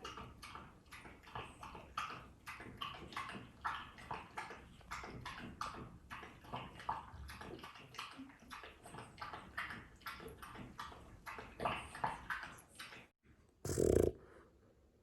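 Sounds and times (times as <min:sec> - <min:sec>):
dog snuffling wetly: 0:13.7 - 0:14.4.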